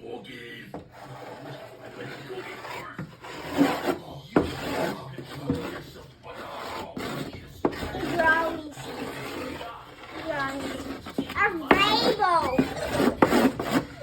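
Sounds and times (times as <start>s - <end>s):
drawing tool scribbling on paper: 0.9s - 14.0s
drawing tool tapping surface: 3.0s - 5.9s, 10.2s - 13.8s.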